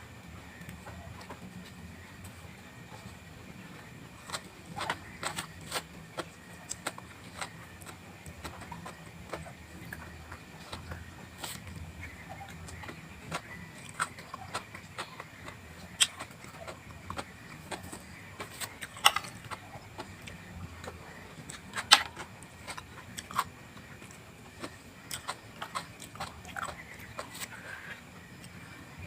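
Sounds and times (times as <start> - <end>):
person chewing crunchy vegetables: 0.4 - 29.0.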